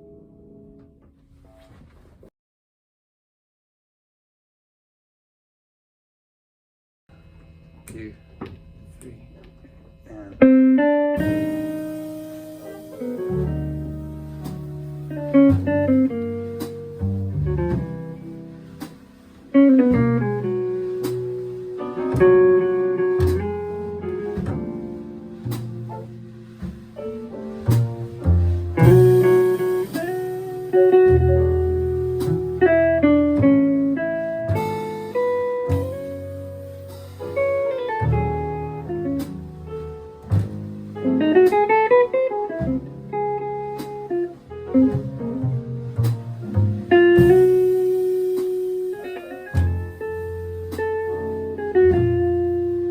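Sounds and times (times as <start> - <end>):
piano: 0.0 - 1.8, 10.4 - 52.9
guitar: 0.0 - 2.1, 7.1 - 52.9
bass: 7.1 - 52.9
band playing: 10.8 - 52.9
drum and cymbal strokes: 11.2 - 13.5, 26.6 - 31.1, 36.6 - 37.6, 46.0 - 51.0
sharp drum hits: 11.2 - 14.9, 19.9 - 32.8, 44.8 - 51.2.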